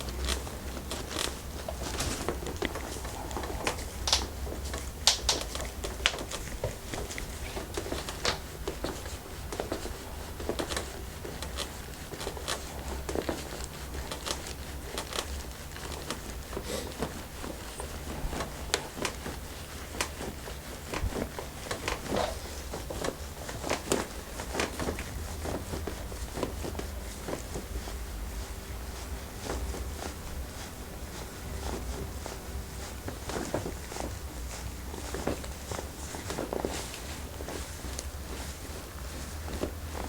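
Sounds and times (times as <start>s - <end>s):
hands rubbing on skin and fabric: 0.0s - 40.0s
steady low hum: 0.0s - 40.0s.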